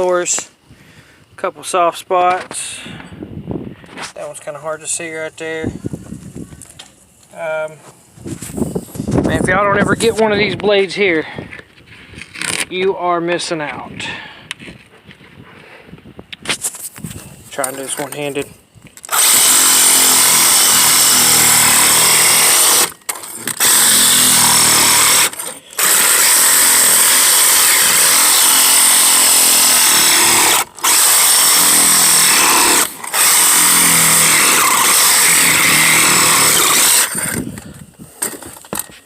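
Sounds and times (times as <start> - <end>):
power tool cutting carpet: 19.1 - 37.4.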